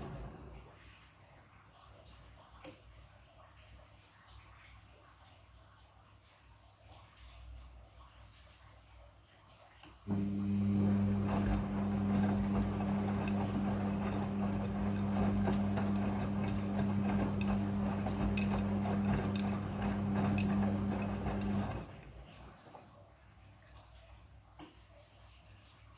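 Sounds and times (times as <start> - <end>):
washing machine drum tumbling: 0.0 - 0.8, 10.1 - 22.8.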